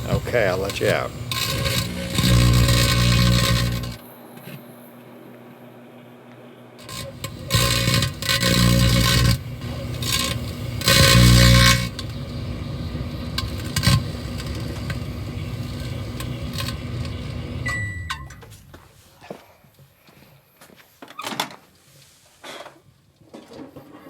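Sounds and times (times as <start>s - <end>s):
scraping: 0.0s - 4.0s, 6.8s - 19.4s
microwave oven humming: 0.0s - 18.8s.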